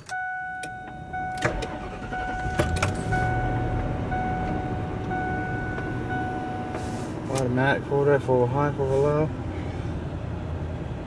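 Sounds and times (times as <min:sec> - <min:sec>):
car engine idling: 0:00.0 - 0:10.4
electronic warning tone: 0:00.1 - 0:06.8.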